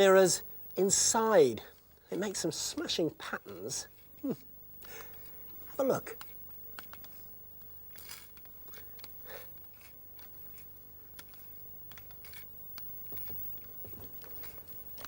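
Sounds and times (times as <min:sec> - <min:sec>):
faint steady hum: 0:00.0 - 0:15.0
handling clicks and rustles: 0:01.7 - 0:15.0.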